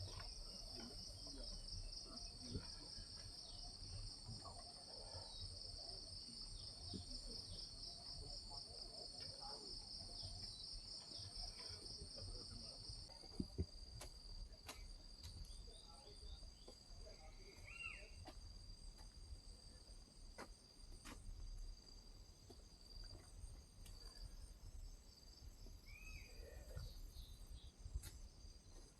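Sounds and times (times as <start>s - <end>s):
insects trilling: 0.0s - 13.8s, 22.7s - 28.9s.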